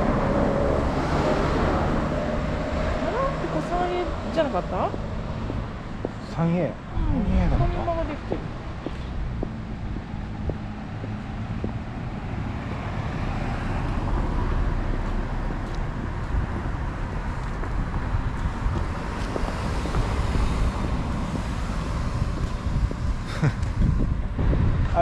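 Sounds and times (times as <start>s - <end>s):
cars passing: 0.0s - 25.0s
low rumble: 14.1s - 25.0s.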